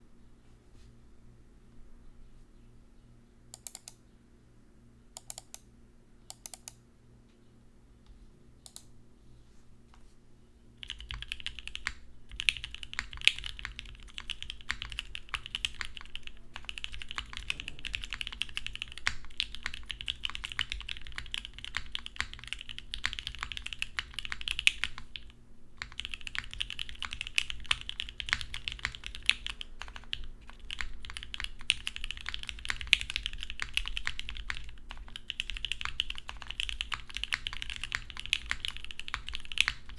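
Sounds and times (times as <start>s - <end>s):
mechanical keyboard typing: 3.6s - 4.0s, 5.2s - 5.6s, 6.3s - 6.8s, 10.8s - 39.9s.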